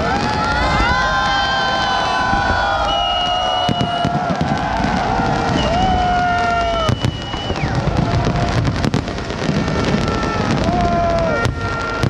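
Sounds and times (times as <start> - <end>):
fireworks bursting and crackling: 0.0 - 12.0
sharp firework bangs: 0.0 - 12.0
whistling firework tones: 0.0 - 12.0.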